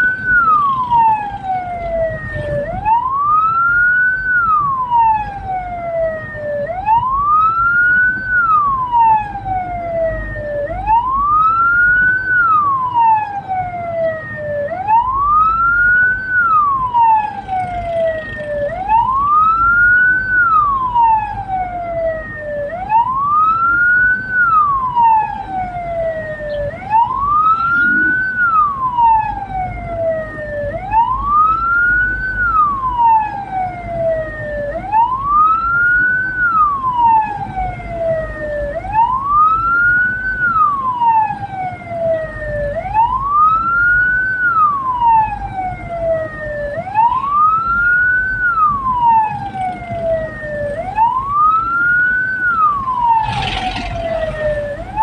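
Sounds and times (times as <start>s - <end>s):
wailing siren: 0.0s - 55.0s
low rumble: 52.8s - 55.0s.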